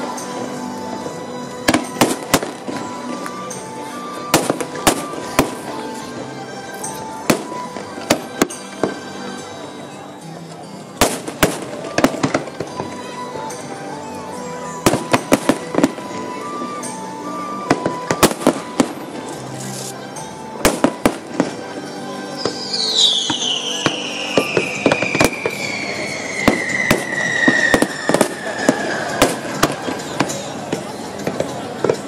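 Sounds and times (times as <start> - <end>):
music playing: 0.0 - 32.0
fireworks bangs: 1.7 - 3.4, 4.3 - 5.7, 11.0 - 13.1, 14.8 - 16.3, 20.6 - 21.6, 22.4 - 32.0
whistle gliding downward: 22.0 - 30.2.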